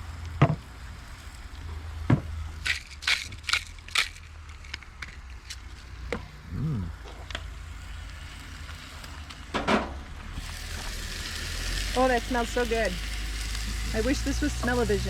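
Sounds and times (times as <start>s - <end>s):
camp cooking clicks and knocks: 2.1s - 6.3s, 7.0s - 15.0s
food sizzling in a pan: 10.3s - 15.0s.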